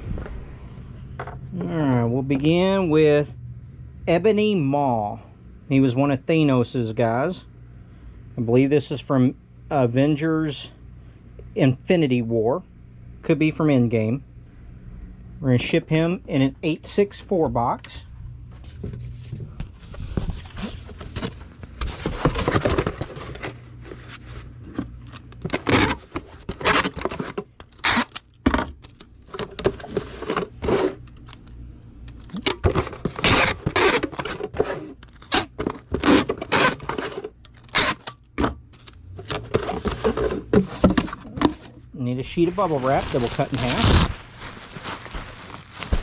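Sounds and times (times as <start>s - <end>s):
cardboard box scraping and tearing: 20.3s - 24.4s, 25.5s - 28.1s, 29.7s - 31.0s, 32.7s - 38.0s, 39.2s - 41.7s, 42.5s - 46.0s.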